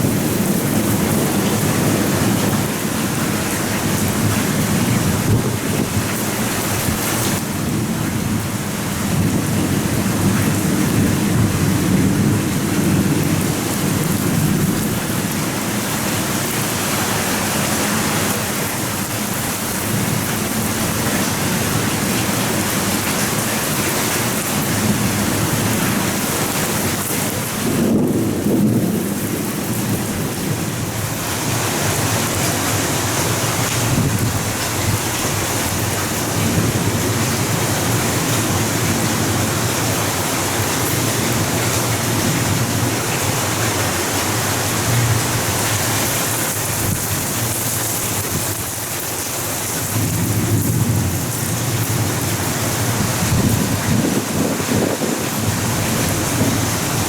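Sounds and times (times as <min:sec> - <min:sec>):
torrential rain: 0:00.0 - 0:57.0
rolling thunder: 0:24.7 - 0:32.8, 0:49.9 - 0:57.0.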